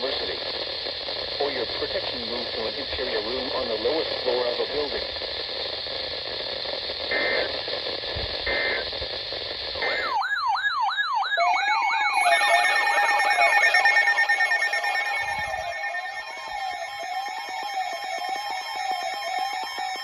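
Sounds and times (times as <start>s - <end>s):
radio static: 0.0s - 10.2s, 11.4s - 20.0s
harsh buzzing data tones: 0.0s - 20.0s
warbling electronic alarm tones: 9.8s - 20.0s.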